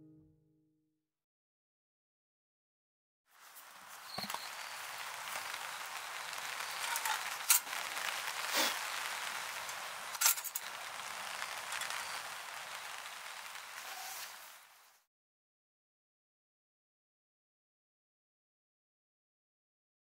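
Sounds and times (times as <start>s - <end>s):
campfire hissing and crackling: 3.3s - 15.1s
sharp fire pops: 4.0s - 14.8s.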